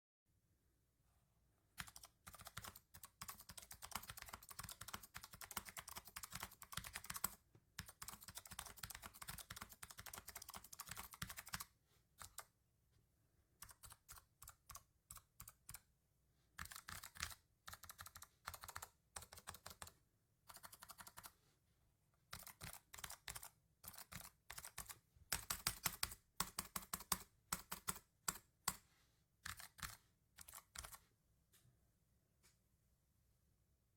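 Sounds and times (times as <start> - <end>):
clicky keyboard typing: 1.8 - 12.5, 13.6 - 15.9, 16.6 - 21.3, 22.3 - 28.8, 29.4 - 31.0.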